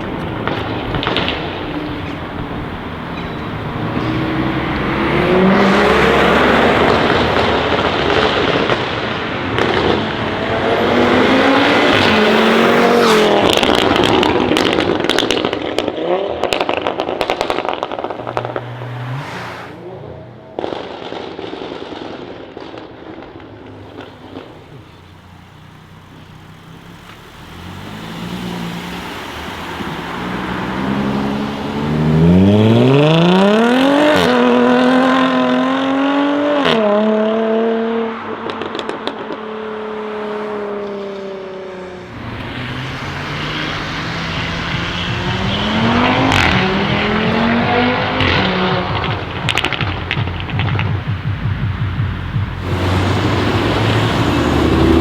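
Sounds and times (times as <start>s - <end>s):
exhaust crackles and pops: 0.0s - 19.8s, 20.4s - 35.7s, 40.8s - 55.0s
car engine accelerating: 0.0s - 20.8s, 23.9s - 55.0s.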